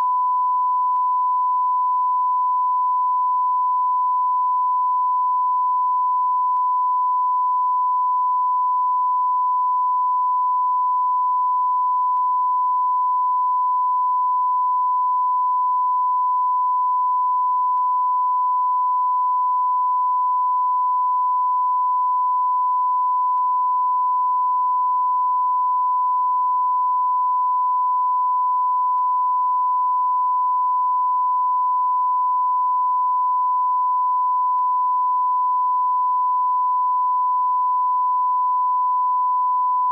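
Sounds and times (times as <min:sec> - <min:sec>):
steady sine tone beep: 0:00.0 - 0:39.9.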